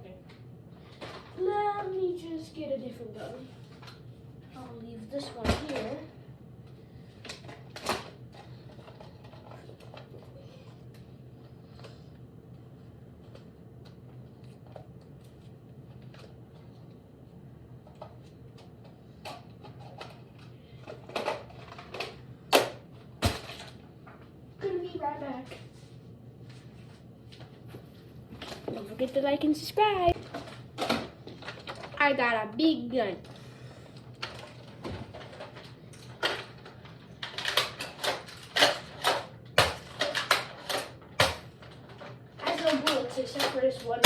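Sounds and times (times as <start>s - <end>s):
clicks and rustling of objects: 7.2s - 12.0s, 17.8s - 24.3s, 30.0s - 32.0s, 33.2s - 44.0s.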